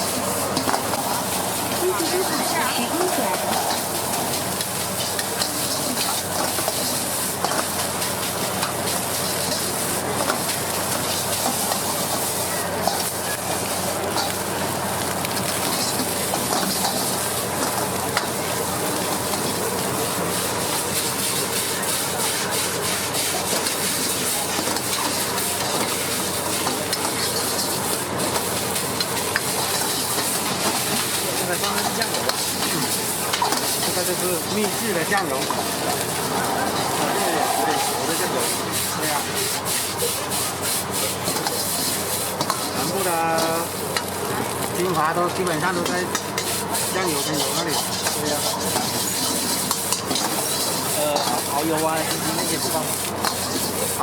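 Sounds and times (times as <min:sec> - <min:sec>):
metal spatula scraping wok: 0:00.0 - 0:07.6, 0:15.6 - 0:17.1, 0:20.4 - 0:43.6, 0:46.1 - 0:54.0
food sizzling in a wok: 0:00.0 - 0:54.0.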